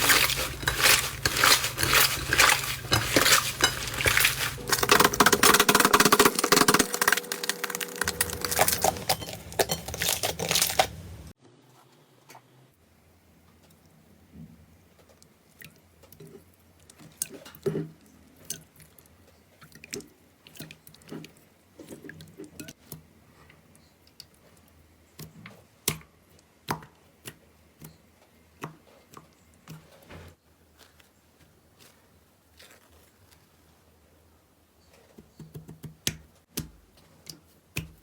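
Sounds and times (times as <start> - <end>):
slime squishing: 0.0 - 11.3.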